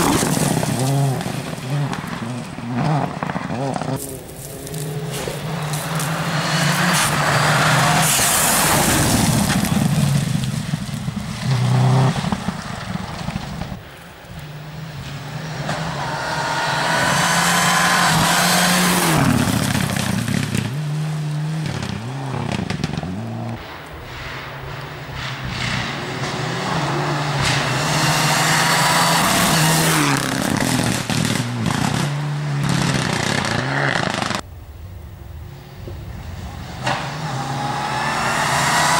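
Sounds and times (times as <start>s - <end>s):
rally car engine passing: 0.0s - 13.8s, 14.6s - 23.6s, 24.6s - 34.4s, 35.6s - 38.9s.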